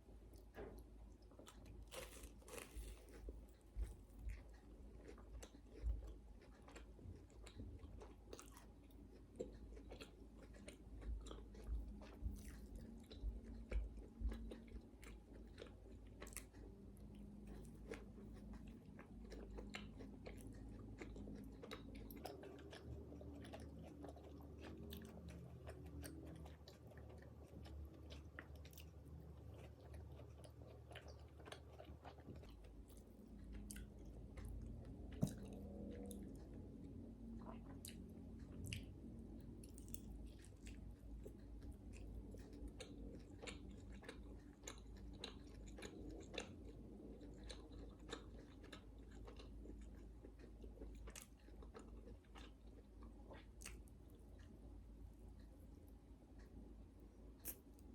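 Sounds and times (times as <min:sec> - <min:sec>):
person chewing crunchy food: 0:00.3 - 0:57.9.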